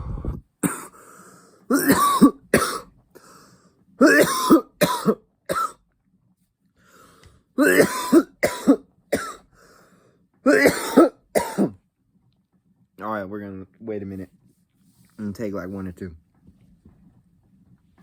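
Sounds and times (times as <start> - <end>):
faint breaths: 0.0 - 1.7, 3.1 - 3.9, 6.8 - 7.6, 9.5 - 10.4
man coughing hard: 0.6 - 1.0, 1.7 - 2.9, 4.0 - 5.8, 7.6 - 9.5, 10.5 - 11.8.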